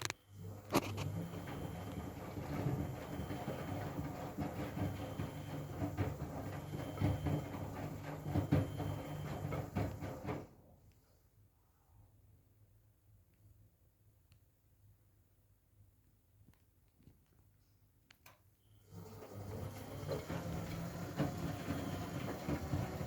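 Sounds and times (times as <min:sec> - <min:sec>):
washing machine motor humming: 0:00.1 - 0:10.6, 0:18.8 - 0:23.0
laundry tumbling with knocks: 0:00.4 - 0:10.7, 0:19.0 - 0:23.0.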